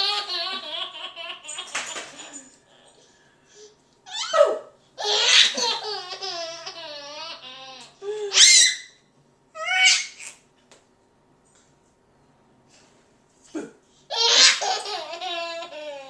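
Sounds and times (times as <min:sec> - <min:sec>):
baby laughing: 0:00.0 - 0:02.5, 0:04.1 - 0:08.8, 0:14.1 - 0:16.0.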